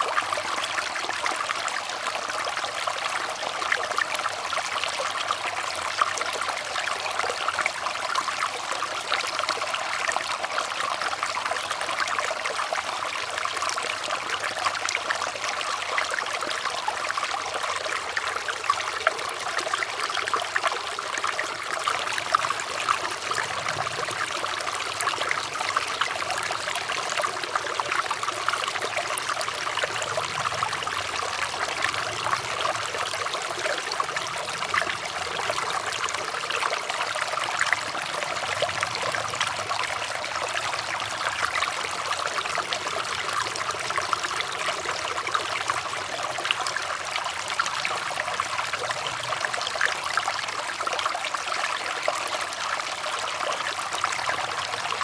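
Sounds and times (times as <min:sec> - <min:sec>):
water trickling over stones: 0:00.0 - 0:55.0.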